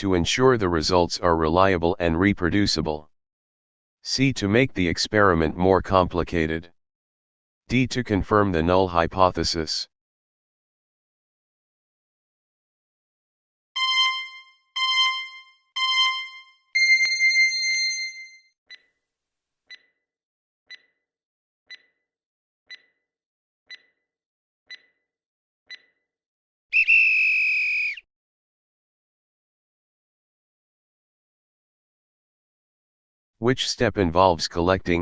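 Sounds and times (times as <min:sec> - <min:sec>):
timer ticking: 0:13.8 - 0:17.2, 0:19.7 - 0:19.9, 0:20.7 - 0:21.0, 0:21.7 - 0:22.0, 0:22.7 - 0:23.0, 0:23.7 - 0:24.0, 0:24.7 - 0:25.0, 0:25.7 - 0:25.9
long electronic tone: 0:13.8 - 0:18.3.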